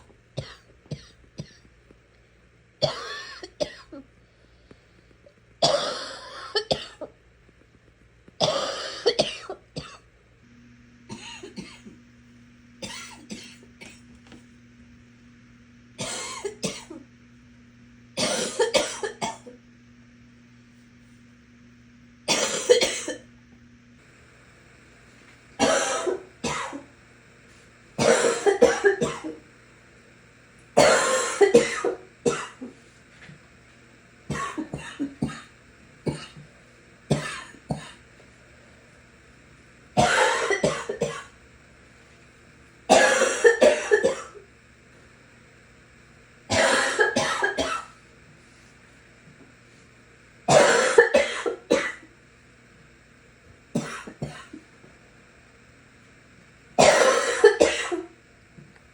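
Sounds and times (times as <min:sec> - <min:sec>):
person coughing in fits: 0:00.4 - 0:01.7, 0:02.8 - 0:04.1, 0:05.6 - 0:07.2, 0:08.4 - 0:10.0, 0:11.1 - 0:12.0, 0:12.8 - 0:14.0, 0:16.0 - 0:17.0, 0:18.2 - 0:19.6, 0:22.3 - 0:23.2, 0:25.6 - 0:26.8, 0:28.0 - 0:29.4, 0:30.8 - 0:32.8, 0:34.3 - 0:35.5, 0:36.1 - 0:36.4, 0:37.1 - 0:38.0, 0:40.0 - 0:41.3, 0:42.9 - 0:44.4, 0:46.5 - 0:48.0, 0:50.5 - 0:52.1, 0:53.8 - 0:54.6, 0:56.8 - 0:58.1.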